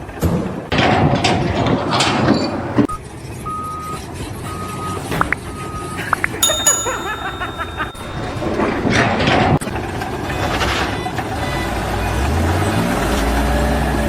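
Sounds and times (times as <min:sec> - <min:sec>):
high ringing tone: 0:06.4 - 0:09.0.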